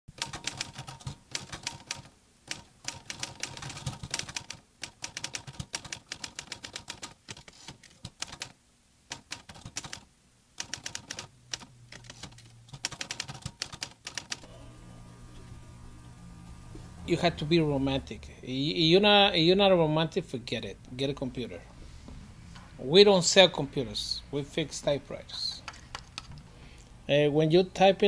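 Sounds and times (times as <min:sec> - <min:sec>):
typewriter keys clicking: 0:00.2 - 0:14.4.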